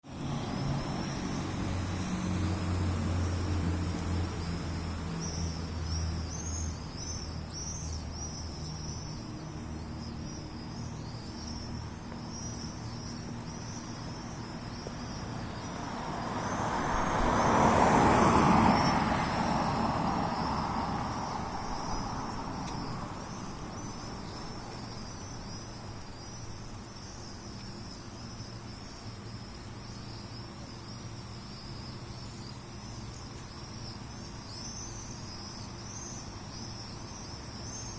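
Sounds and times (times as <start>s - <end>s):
road vehicle passing: 0.0s - 26.1s
low engine hum: 0.0s - 26.8s
insects chirping: 0.0s - 37.9s.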